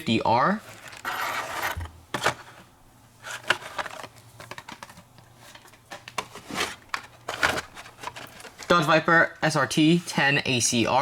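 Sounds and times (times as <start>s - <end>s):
packaging rustling: 0.6s - 8.9s
plastic packages clacking: 3.2s - 8.9s.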